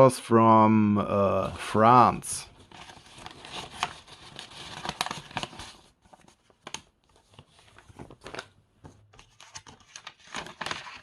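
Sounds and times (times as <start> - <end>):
paper crinkling and rustling: 2.5 - 11.0
paper envelope tearing: 2.6 - 8.5, 9.2 - 11.0.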